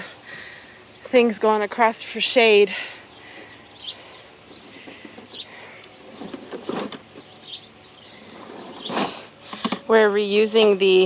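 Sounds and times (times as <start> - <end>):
bird chirps: 3.0 - 9.1
construction materials clattering: 4.5 - 7.3, 8.2 - 10.0.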